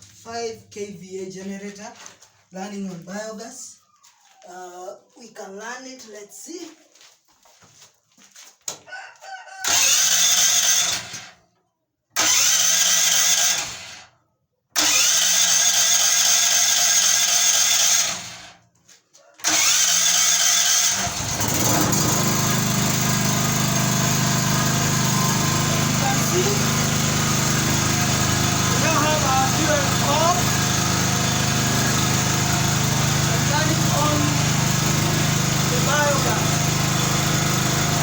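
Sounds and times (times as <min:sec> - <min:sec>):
generator engine cranking: 0:09.6 - 0:11.3, 0:12.2 - 0:14.0, 0:14.8 - 0:18.6, 0:19.4 - 0:38.0
generator engine running: 0:19.4 - 0:38.0.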